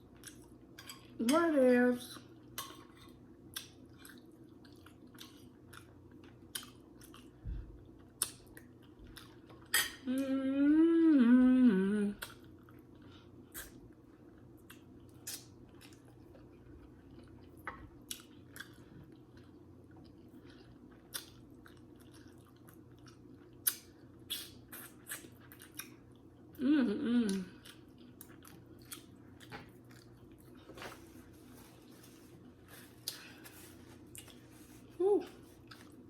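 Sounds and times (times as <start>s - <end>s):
person chewing food: 0.0s - 1.2s, 2.2s - 10.0s, 12.2s - 26.6s, 27.2s - 36.0s
person humming mmm: 10.0s - 12.3s, 26.6s - 27.7s.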